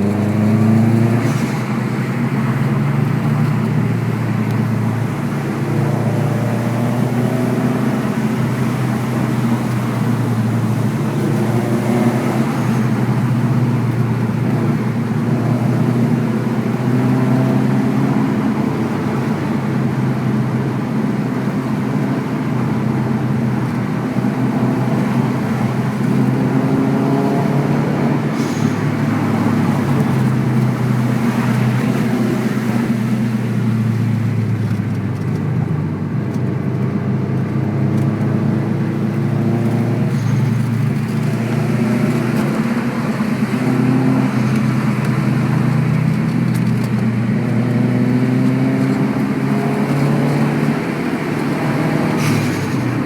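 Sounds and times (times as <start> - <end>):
car engine revving: 0.0 - 53.0
faint short hisses: 52.2 - 52.8.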